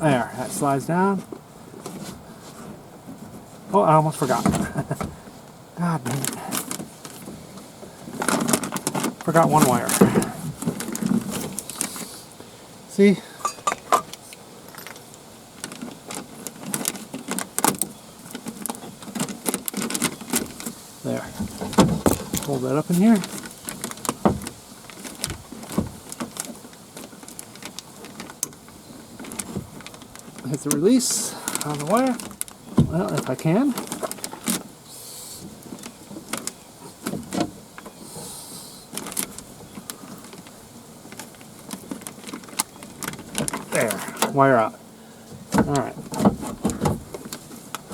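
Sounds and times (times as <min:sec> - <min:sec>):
short hiss: 0:11.7 - 0:12.4, 0:34.8 - 0:35.6, 0:38.0 - 0:38.9.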